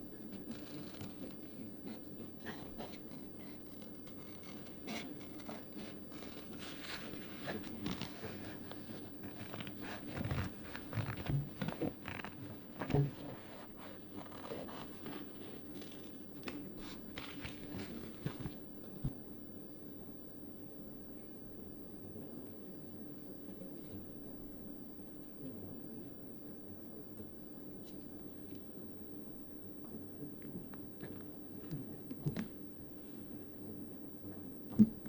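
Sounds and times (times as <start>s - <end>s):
paper rustling: 0.1s - 19.1s
paper scraping and clicks: 0.2s - 18.6s
soft knocks and rubbing: 0.4s - 19.2s.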